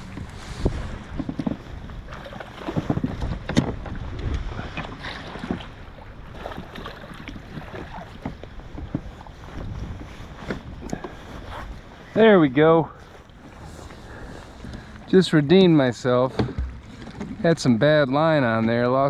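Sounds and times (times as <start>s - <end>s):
water: 0.0s - 19.0s
wind: 0.0s - 19.0s
gear knocking against kayak hull: 1.1s - 5.7s, 6.6s - 11.2s.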